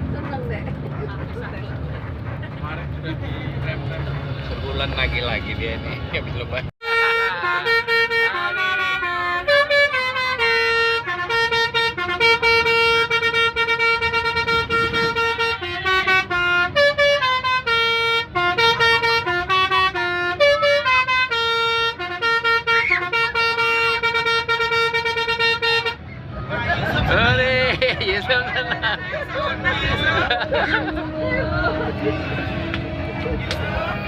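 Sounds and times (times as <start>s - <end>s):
musical air horn playing a tune: 6.8s - 26.0s.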